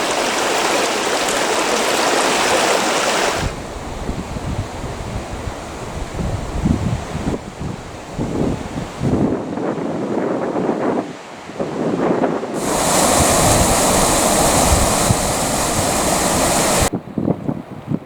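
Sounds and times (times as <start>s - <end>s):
river rushing: 12.6s - 16.9s.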